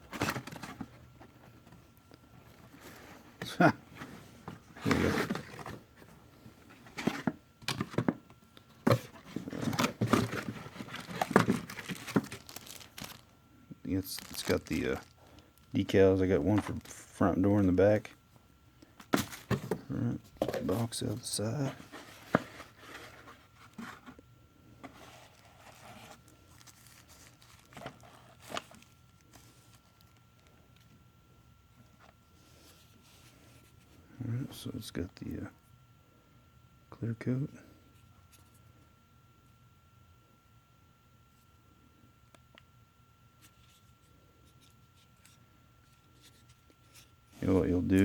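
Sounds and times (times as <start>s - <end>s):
packaging scraping and rustling: 2.4s - 8.2s, 8.8s - 13.3s, 14.0s - 15.3s, 20.4s - 24.2s, 24.8s - 30.5s
cardboard box being opened: 4.0s - 5.9s, 8.8s - 13.2s.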